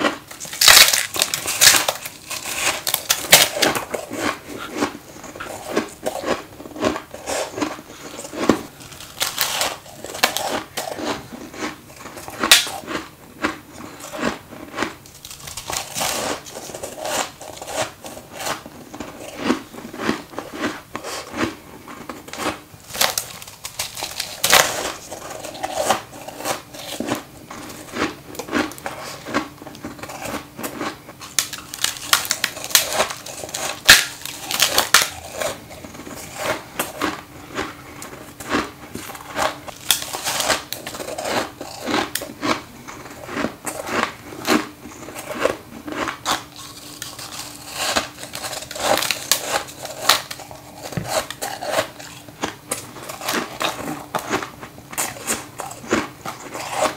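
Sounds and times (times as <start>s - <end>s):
crunching bites into frost ice: 0.0s - 18.6s
faint steady hum: 0.0s - 56.9s.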